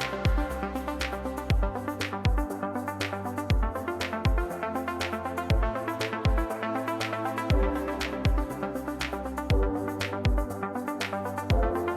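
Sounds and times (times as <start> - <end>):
electronic music: 0.0 - 11.9
kick drum beat: 0.3 - 0.5, 1.5 - 1.7, 2.3 - 2.5, 3.5 - 3.7, 4.3 - 4.5, 5.5 - 5.7, 6.3 - 6.5, 7.5 - 7.7, 8.3 - 8.5, 9.5 - 10.5, 11.5 - 11.8.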